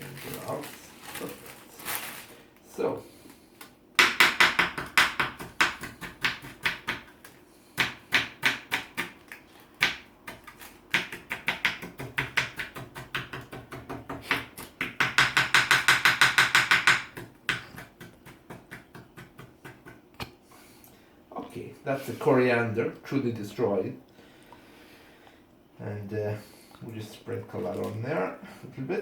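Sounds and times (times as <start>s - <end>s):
knife chopping on cutting board: 4.0s - 7.2s, 7.8s - 9.2s, 9.8s - 19.9s.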